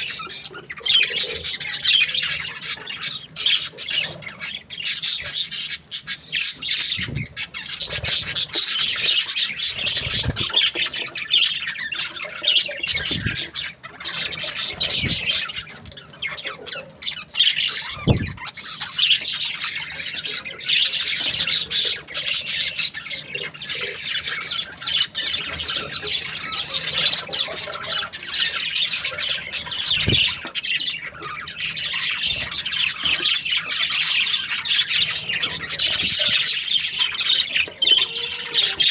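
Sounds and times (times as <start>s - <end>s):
budgerigars chattering and chirping: 0.0s - 38.9s.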